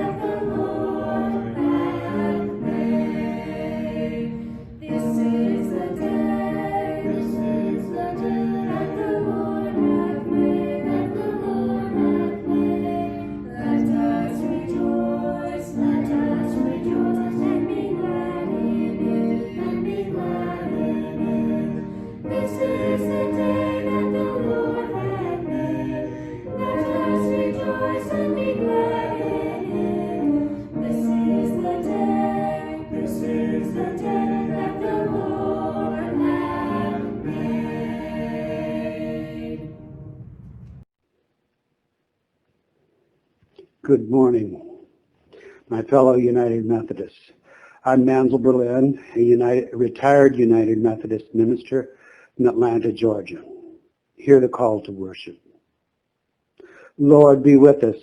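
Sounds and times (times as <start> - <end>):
choir singing in harmony: 0.0 - 40.4.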